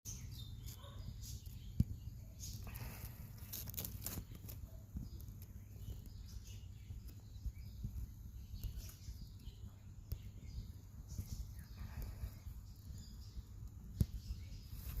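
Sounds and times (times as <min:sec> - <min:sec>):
light rustles: 0:00.6 - 0:06.2.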